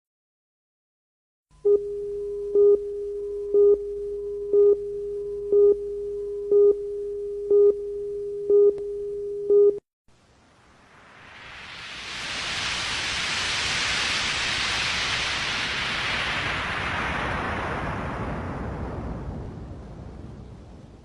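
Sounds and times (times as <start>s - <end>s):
electronic beeps: 1.6s - 9.8s
steady electronic tone: 1.6s - 9.8s
faint hiss: 10.1s - 21.0s.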